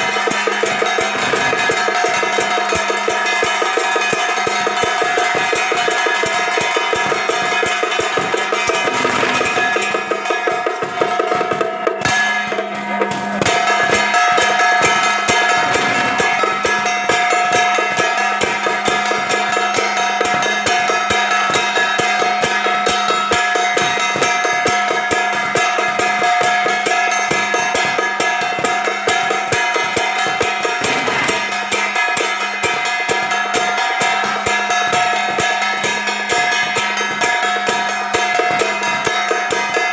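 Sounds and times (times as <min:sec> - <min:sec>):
rapid drumming: 0:00.0 - 0:39.9
steady held tones: 0:08.5 - 0:10.8, 0:30.6 - 0:31.7.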